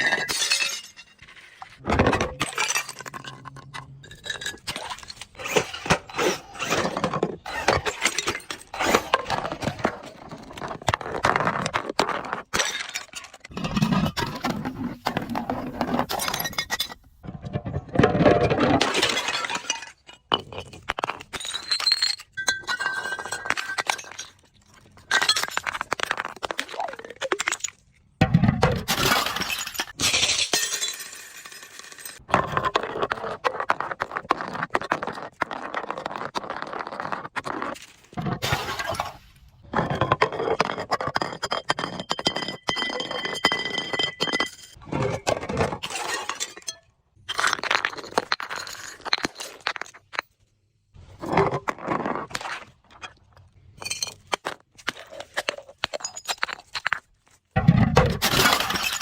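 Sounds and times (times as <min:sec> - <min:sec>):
glass bottles breaking: 0:00.0 - 0:01.3, 0:02.3 - 0:06.7, 0:18.4 - 0:24.4, 0:28.3 - 0:32.2, 0:38.2 - 0:39.4, 0:57.6 - 0:59.0.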